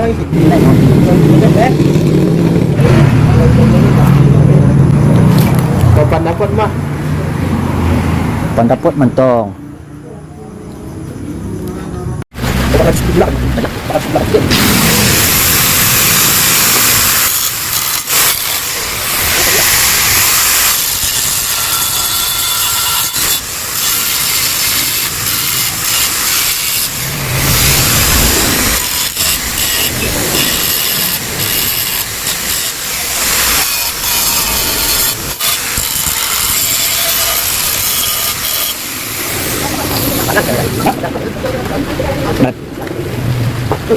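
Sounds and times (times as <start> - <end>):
metal grinding with workshop tool: 14.5 - 41.0.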